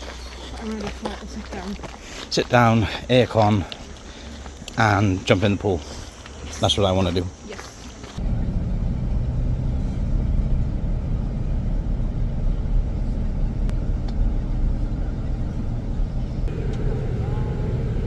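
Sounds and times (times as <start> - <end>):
vehicle rumble from inside cabin: 8.2 - 18.0.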